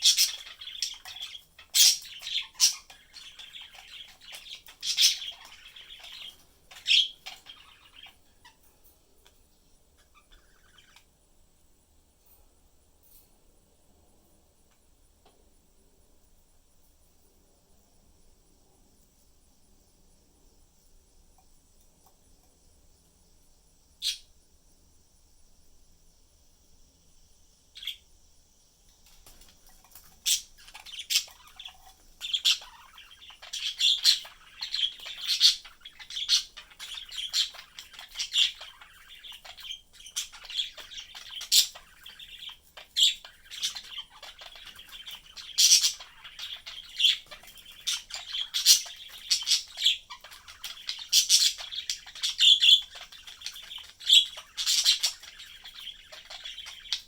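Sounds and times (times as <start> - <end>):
budgerigars chirping: 0.0 - 8.6, 10.0 - 11.0, 27.8 - 28.0, 29.2 - 57.0.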